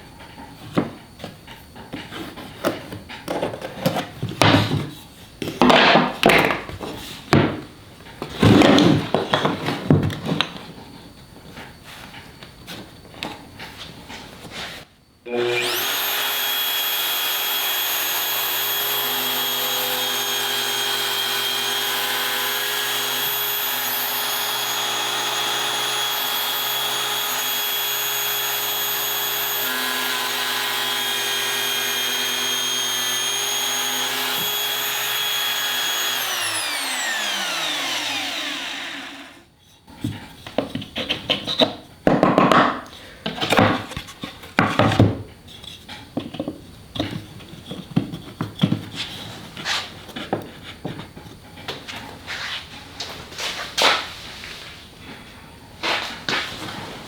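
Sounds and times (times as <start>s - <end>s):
wood and tools clattering: 0.6s - 14.8s, 15.6s - 57.0s
power tool motor whining: 15.3s - 39.5s.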